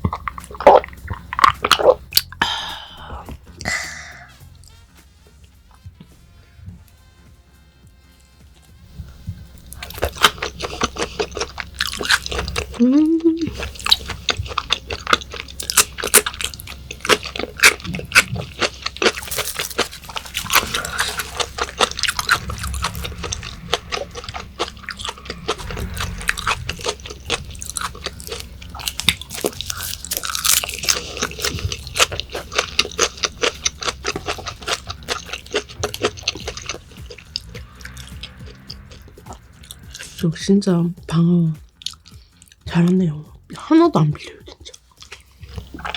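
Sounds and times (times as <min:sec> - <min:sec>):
wet chewing clicks and smacks: 0:00.0 - 0:02.6, 0:09.6 - 0:40.2, 0:41.6 - 0:43.0, 0:44.1 - 0:45.9
crunching: 0:08.6 - 0:12.8, 0:13.4 - 0:40.2.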